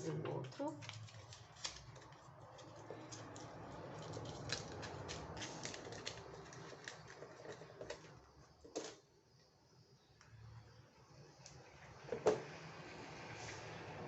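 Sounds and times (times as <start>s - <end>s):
sharp paper click: 0.8s - 3.4s, 4.0s - 7.5s
paper crinkling: 0.8s - 8.1s.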